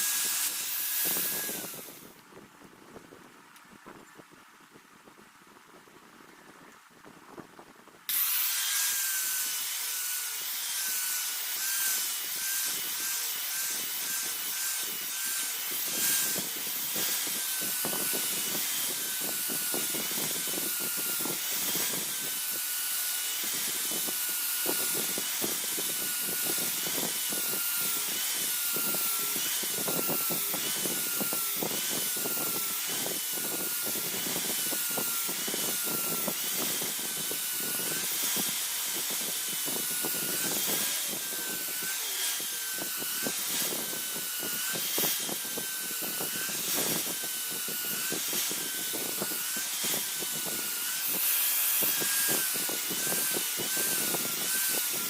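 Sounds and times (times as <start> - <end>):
power tool motor whining: 0.0 - 2.2, 8.1 - 55.0.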